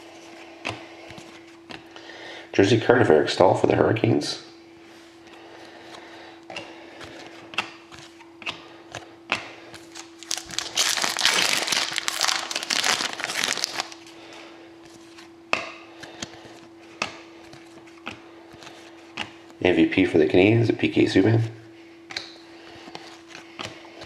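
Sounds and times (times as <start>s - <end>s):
faint steady hum: 0.0s - 24.0s
foil wrapper tearing and crinkling: 9.9s - 14.1s.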